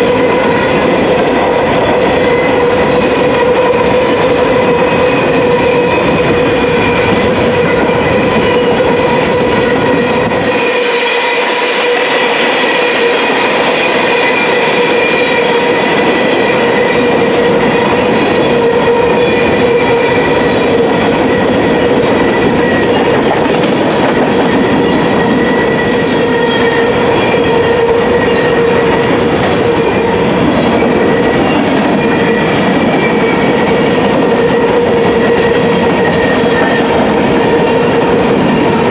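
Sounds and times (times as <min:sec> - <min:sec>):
train wheels clattering over rails: 0:00.0 - 0:38.9
high-pitched wheel squeal: 0:24.4 - 0:38.0.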